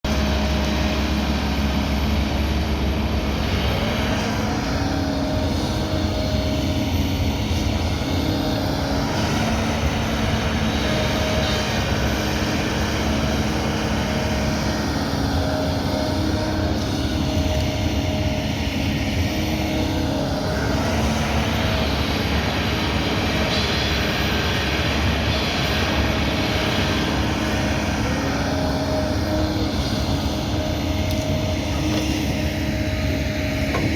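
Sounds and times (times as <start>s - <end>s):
excavator diesel engine running: 0.0s - 33.9s
hydraulic whine: 0.0s - 33.9s.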